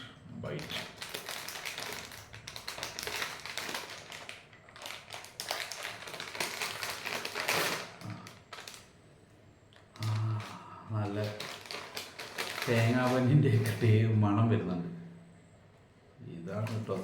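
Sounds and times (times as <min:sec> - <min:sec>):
plastic snack packet crinkling: 0:00.5 - 0:08.9, 0:09.8 - 0:14.0, 0:16.6 - 0:17.0.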